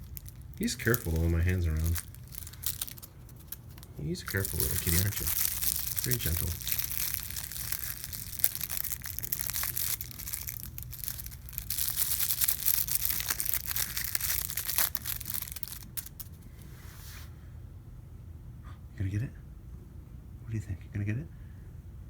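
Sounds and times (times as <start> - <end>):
crinkle ball crackling: 0.0 - 16.6.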